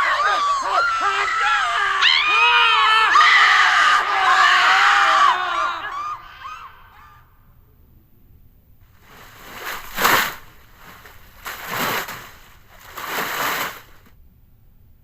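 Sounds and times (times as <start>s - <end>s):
water splashing and sloshing: 8.8s - 14.1s.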